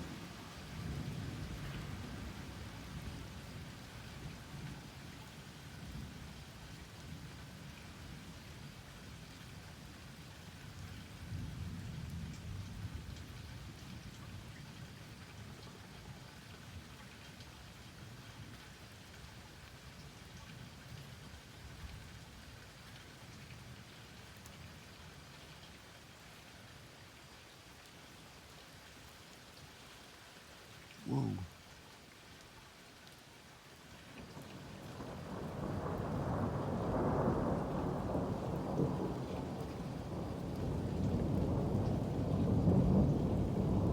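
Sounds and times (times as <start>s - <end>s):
steady rain pattering: 0.0s - 43.9s
distant thunder rumble: 34.4s - 43.9s.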